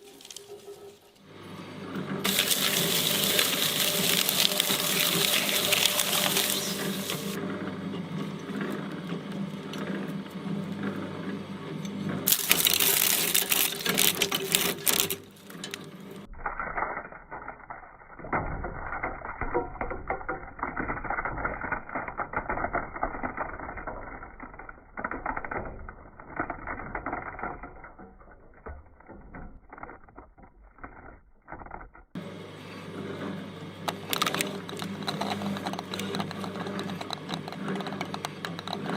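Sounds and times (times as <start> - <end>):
electric shredder motor hum: 1.3 - 11.4, 12.1 - 16.2, 33.2 - 38.9
shredder crunching and clicking: 2.2 - 7.4, 12.2 - 16.9, 33.8 - 38.9.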